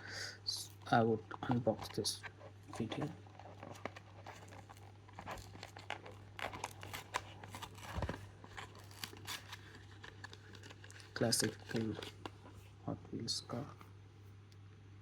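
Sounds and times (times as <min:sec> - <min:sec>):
plastic packaging crackling and tearing: 0:00.6 - 0:12.8.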